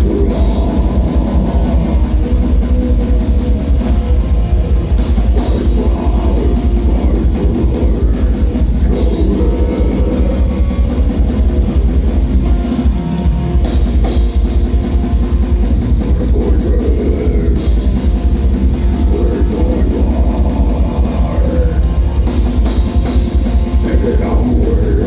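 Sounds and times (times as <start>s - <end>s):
fast bass drum strokes: 0.0s - 25.0s
low guitar chords: 0.0s - 25.0s.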